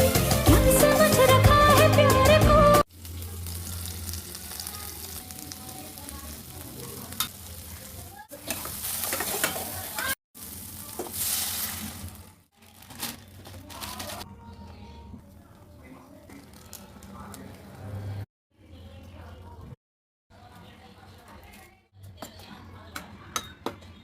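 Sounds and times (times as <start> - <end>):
food sizzling in a pan: 2.9 - 12.8
stirring in a pan: 2.9 - 13.6.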